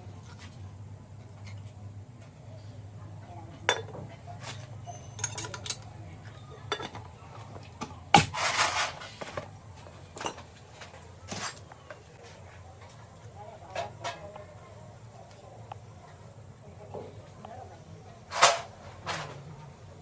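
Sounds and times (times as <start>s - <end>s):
metal tools clinking and knocking: 3.7s - 7.1s, 10.2s - 12.0s.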